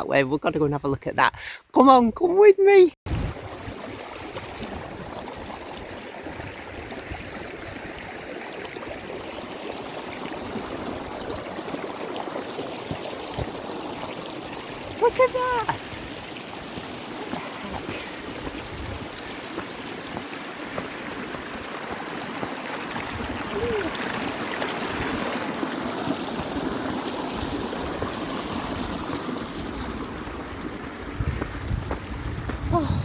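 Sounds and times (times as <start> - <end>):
stream water rushing: 3.1 - 32.6.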